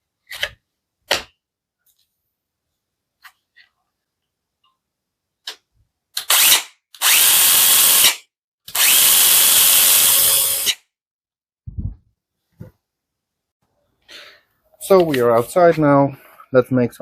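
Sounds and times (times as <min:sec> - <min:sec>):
mini chainsaw running: 0:06.3 - 0:10.8
low thump: 0:11.7 - 0:12.0.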